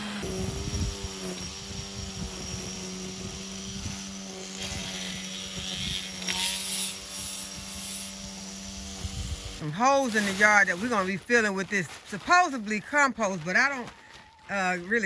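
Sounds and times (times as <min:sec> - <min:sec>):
small gasoline engine running: 0:00.0 - 0:11.2.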